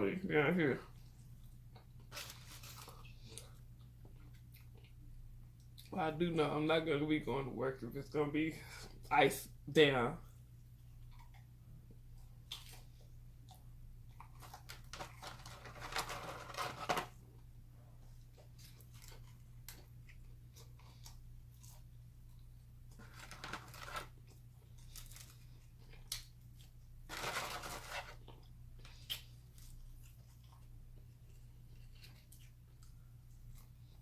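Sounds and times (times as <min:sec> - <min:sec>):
low steady hum: 0:00.0 - 0:34.0
food crunching and rustling: 0:00.9 - 0:05.0, 0:10.6 - 0:17.4, 0:18.0 - 0:34.0.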